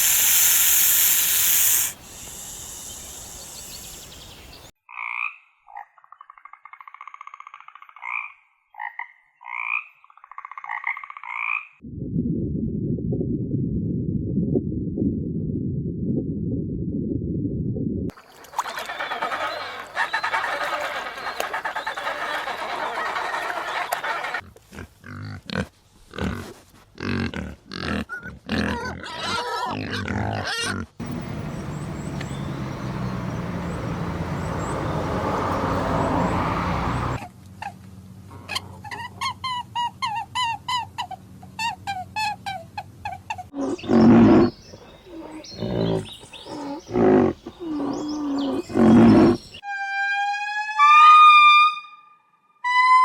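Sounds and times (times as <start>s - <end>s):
short repeated high calls: 0.0s - 4.2s
loud low animal calls: 0.0s - 4.7s, 18.3s - 24.4s, 28.7s - 49.6s
farm animal calls: 18.2s - 24.4s, 27.8s - 49.6s.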